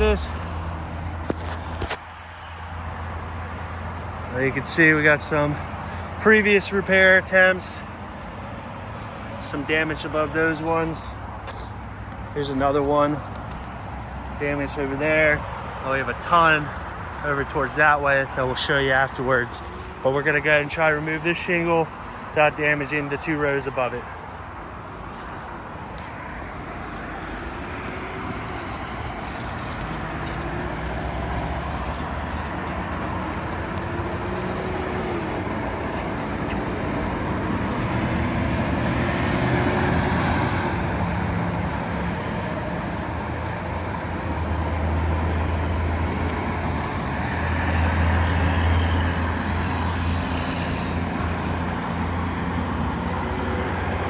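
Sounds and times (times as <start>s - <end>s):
low traffic hum: 0.0s - 54.0s
engine running: 24.4s - 54.0s.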